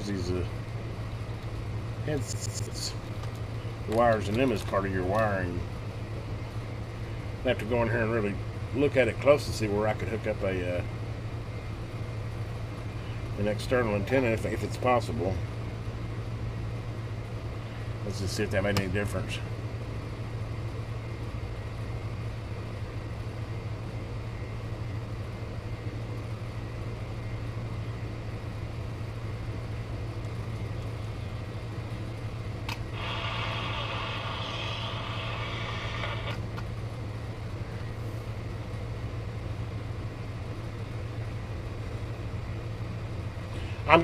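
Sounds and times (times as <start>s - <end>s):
radio hum and hiss: 0.0s - 44.0s
buzzy radio static: 32.9s - 36.6s.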